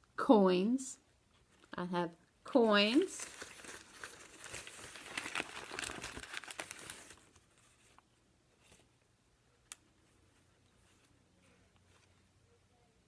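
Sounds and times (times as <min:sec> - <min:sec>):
bag crinkling: 0:02.9 - 0:07.3.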